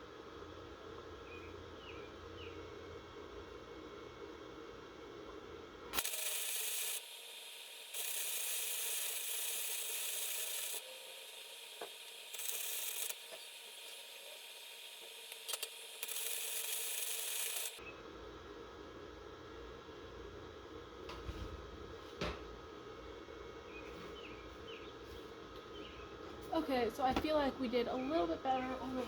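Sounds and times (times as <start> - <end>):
welding arc crackling and hissing: 6.0 - 17.8.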